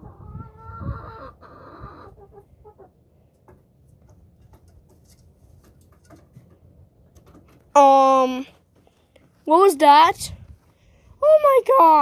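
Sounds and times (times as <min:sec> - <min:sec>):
chickens clucking: 0:00.0 - 0:07.7.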